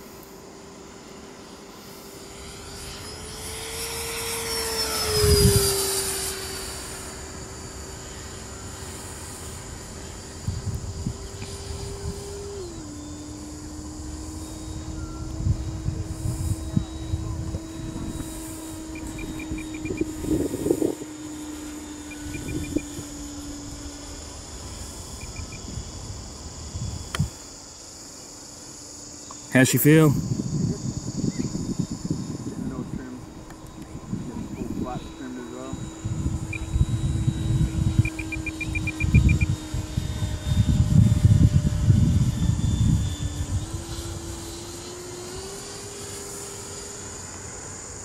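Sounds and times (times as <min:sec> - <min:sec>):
ducted fan jet whine: 0:00.0 - 0:48.0.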